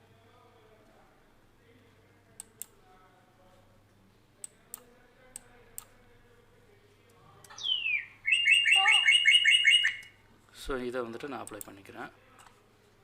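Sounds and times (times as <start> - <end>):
computer mouse clicking: 2.4 - 2.7, 11.4 - 11.8.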